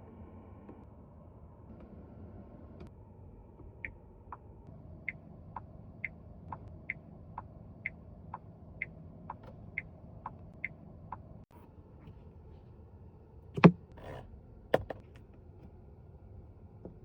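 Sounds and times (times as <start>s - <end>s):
turn signal ticking: 3.8s - 11.4s.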